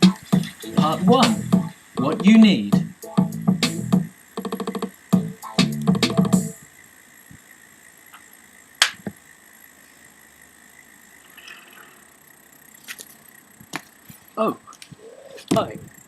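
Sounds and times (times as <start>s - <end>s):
electronic music with a beat: 0.0s - 6.6s.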